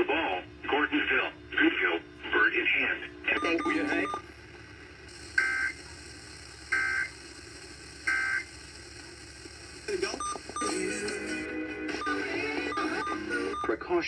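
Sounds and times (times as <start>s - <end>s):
broadcast voices: 0.0s - 4.2s
two-tone data burst warbles: 3.4s - 4.2s
broadcast music: 10.6s - 13.8s.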